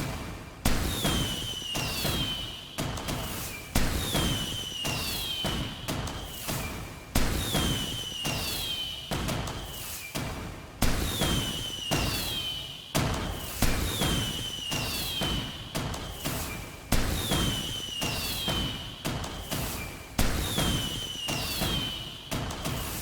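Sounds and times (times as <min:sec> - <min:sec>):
high falling firework whistle: 0:00.8 - 0:10.1, 0:11.0 - 0:23.0
firework bangs: 0:03.1 - 0:06.5, 0:13.1 - 0:23.0
firework crackle: 0:03.1 - 0:08.9, 0:10.9 - 0:23.0.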